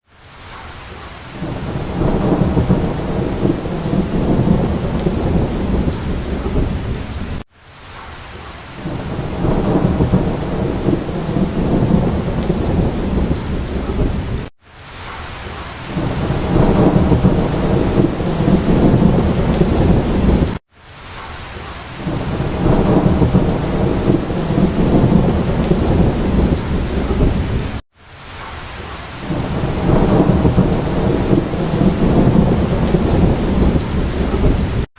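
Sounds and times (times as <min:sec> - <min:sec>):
steady rain: 0:00.0 - 0:34.9
deep rumble of thunder: 0:01.4 - 0:07.4, 0:08.8 - 0:14.5, 0:16.0 - 0:20.6, 0:22.0 - 0:27.8, 0:29.3 - 0:34.9.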